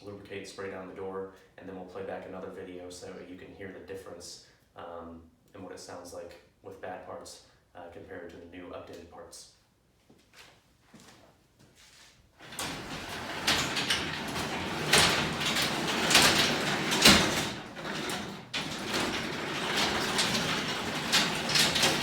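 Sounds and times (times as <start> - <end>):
garage door rollers rattling: 12.4 - 22.0
loud clanks: 12.4 - 22.0.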